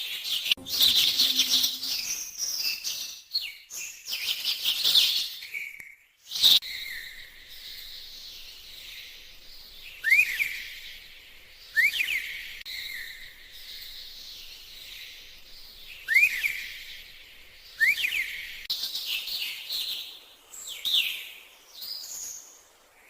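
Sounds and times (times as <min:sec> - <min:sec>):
rising whistled bird chirps: 0:00.2 - 0:05.0, 0:06.3 - 0:20.0
high chirring: 0:00.6 - 0:02.5.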